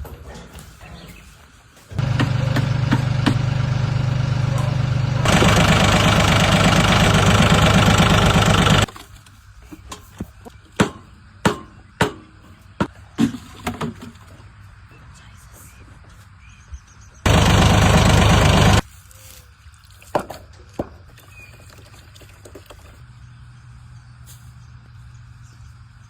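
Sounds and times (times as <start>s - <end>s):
engine running: 1.9s - 8.9s, 17.3s - 18.9s.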